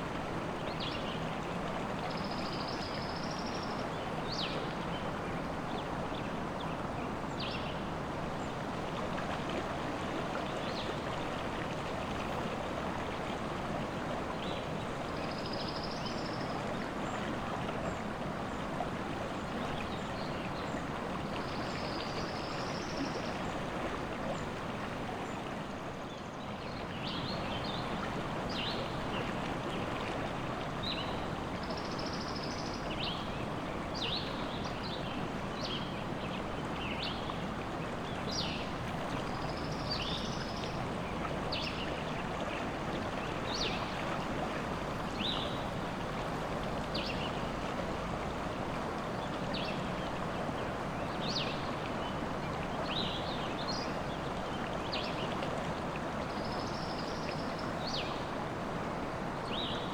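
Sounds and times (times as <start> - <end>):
river water rushing: 26.8 - 59.9.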